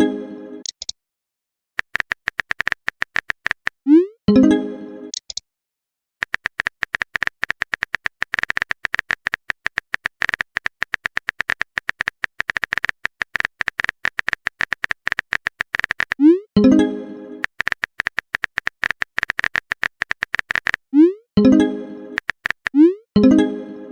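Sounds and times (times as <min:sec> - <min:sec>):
phone keyboard typing clicks: 0:01.8 - 0:03.8, 0:06.2 - 0:16.3, 0:17.4 - 0:20.9, 0:22.2 - 0:22.8
message alert chime: 0:03.9 - 0:04.8, 0:16.6 - 0:17.2, 0:21.4 - 0:22.2.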